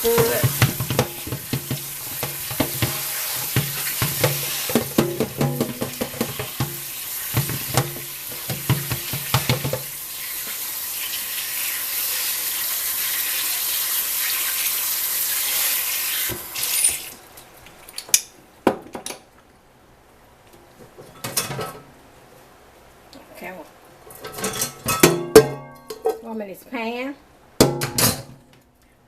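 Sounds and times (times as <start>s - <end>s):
kitchen tap running into sink: 0.0s - 17.2s.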